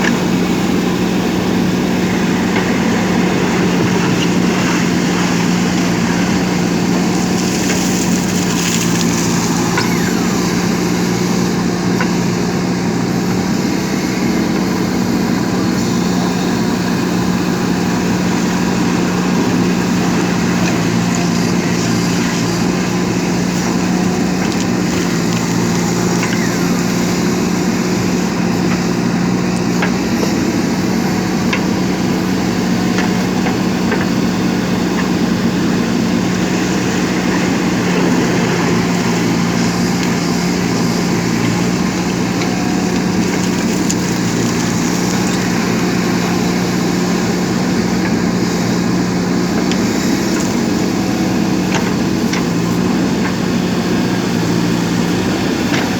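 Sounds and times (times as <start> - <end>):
diesel engine running: 0.0 - 55.9.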